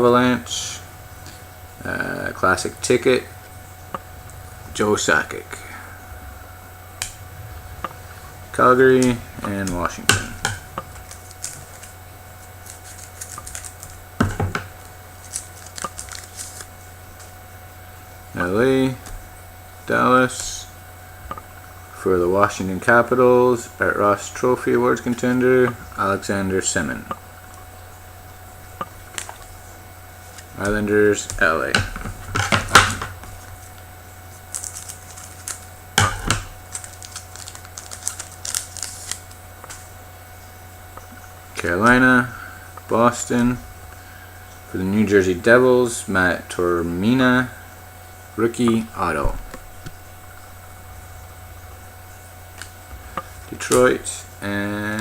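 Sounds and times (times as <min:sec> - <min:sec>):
low steady hum: 0:00.0 - 0:55.0
trading cards clicking and rustling: 0:07.0 - 0:17.4, 0:28.8 - 0:40.0.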